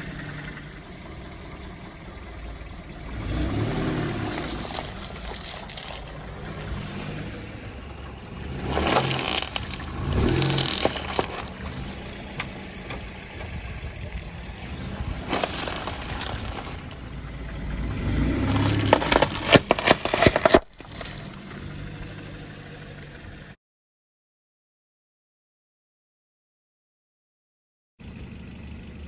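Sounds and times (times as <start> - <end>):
car engine running: 0.0 - 23.6, 28.0 - 29.0
tyre crushing brittle objects: 7.6 - 13.5, 14.7 - 17.2, 18.4 - 21.3.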